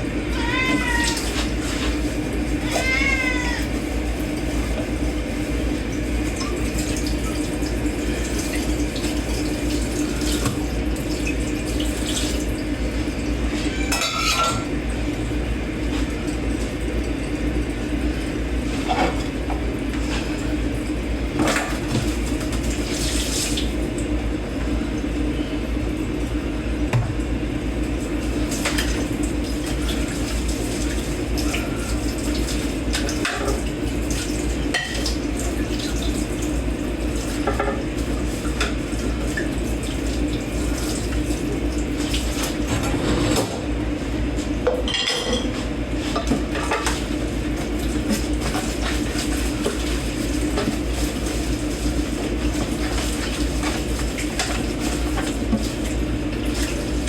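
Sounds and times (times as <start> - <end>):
running tap water: 0.0 - 57.0
dishes and cutlery clinking: 13.9 - 14.7, 44.8 - 45.6.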